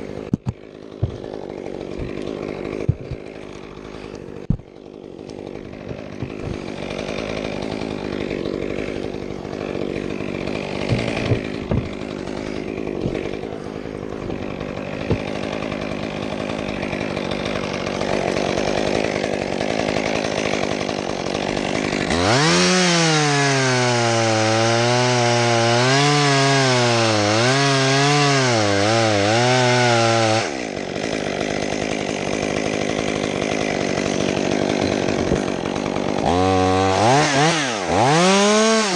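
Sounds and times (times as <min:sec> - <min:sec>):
chainsaw revving close by: 0:00.0 - 0:38.9
distant chainsaw running: 0:00.0 - 0:38.9.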